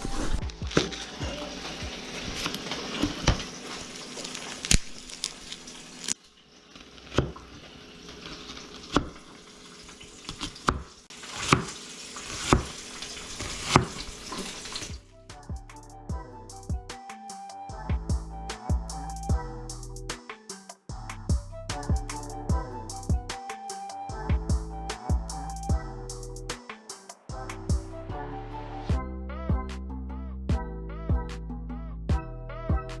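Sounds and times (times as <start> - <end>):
music: 0.0 - 2.7, 14.9 - 33.0.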